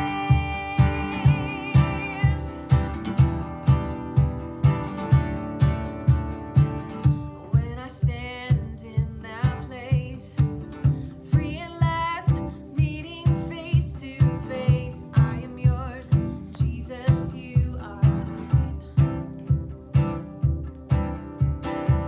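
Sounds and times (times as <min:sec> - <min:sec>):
person singing: 0:00.0 - 0:02.9
strummed guitar: 0:00.0 - 0:22.0.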